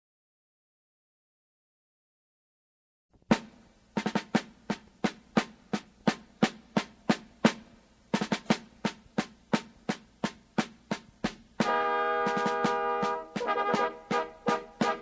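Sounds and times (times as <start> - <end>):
snare drum marching cadence: 3.3 - 15.0.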